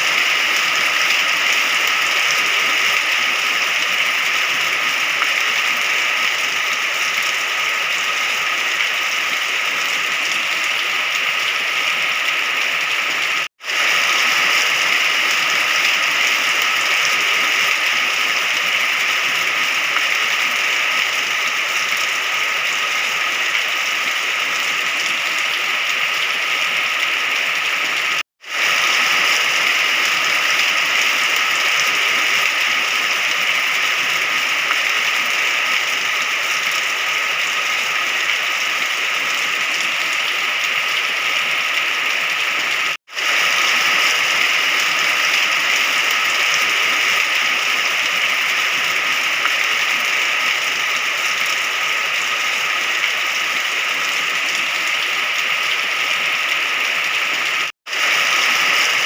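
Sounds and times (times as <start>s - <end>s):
rain hissing: 0.0s - 59.0s.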